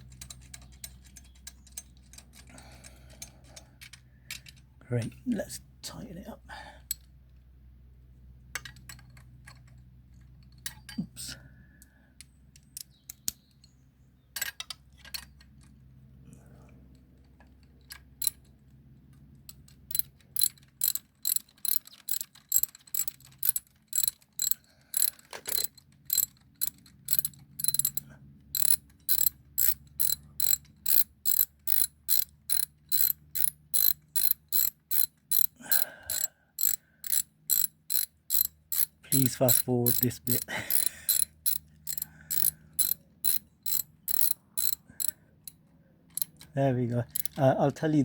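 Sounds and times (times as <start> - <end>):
ratchet wrench clicking: 19.9 - 47.4.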